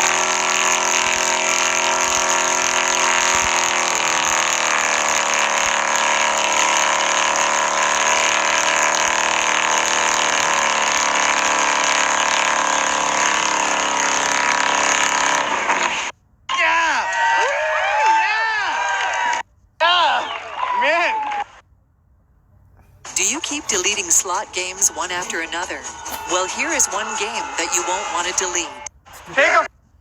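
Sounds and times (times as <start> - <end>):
truck engine running at high revs: 0.0 - 16.2, 22.7 - 29.9.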